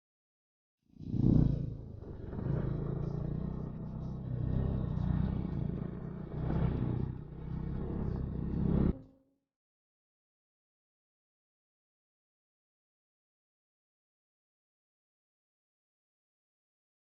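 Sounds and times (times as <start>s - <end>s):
motorcycle engine revving: 1.0s - 9.1s.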